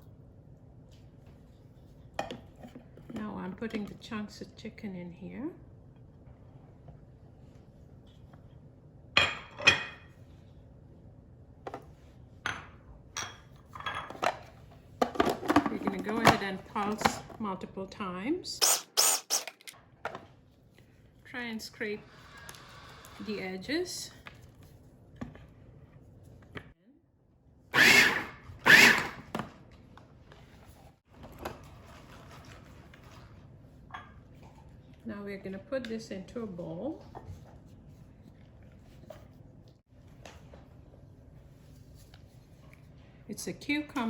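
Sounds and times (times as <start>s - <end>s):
food processor motor pulsing: 27.7s - 29.3s.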